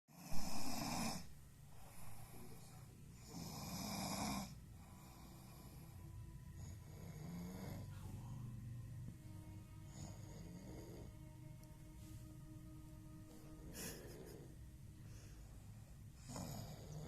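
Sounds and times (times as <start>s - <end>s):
person snoring: 0.1s - 11.6s, 13.3s - 15.6s, 16.2s - 17.0s
faint breath: 1.6s - 3.2s, 7.8s - 8.8s, 13.3s - 17.0s.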